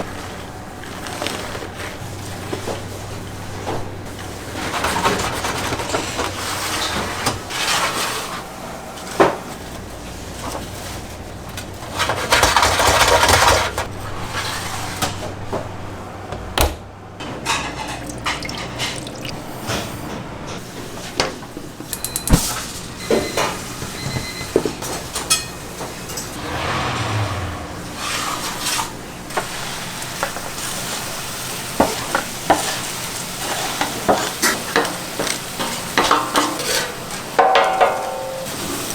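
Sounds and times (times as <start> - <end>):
utensils and pans clattering: 11.9 - 15.2, 17.2 - 19.8, 24.8 - 26.4, 31.8 - 38.9.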